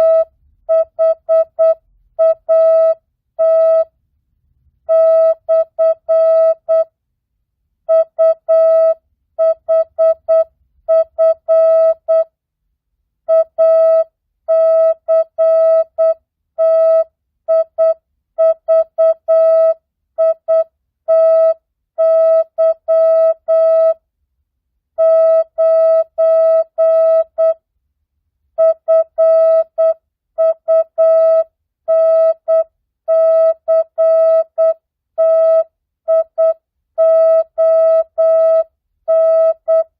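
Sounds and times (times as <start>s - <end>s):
morse code beeps: 0.0s - 3.9s, 4.9s - 6.9s, 7.9s - 12.3s, 25.0s - 27.6s, 28.6s - 39.9s.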